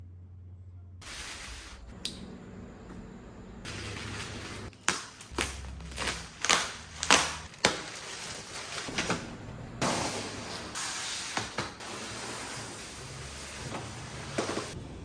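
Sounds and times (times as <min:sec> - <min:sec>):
packaging rustling: 0:03.7 - 0:09.3
packaging scraping swishes: 0:03.7 - 0:14.8.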